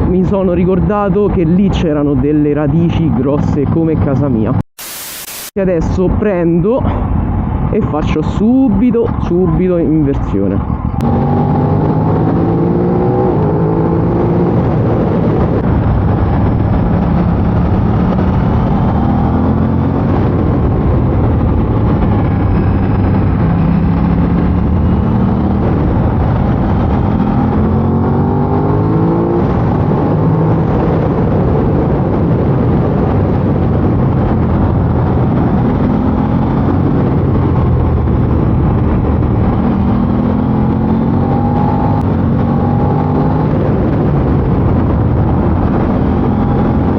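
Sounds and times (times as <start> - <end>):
motorcycle engine accelerating: 10.6 - 46.9.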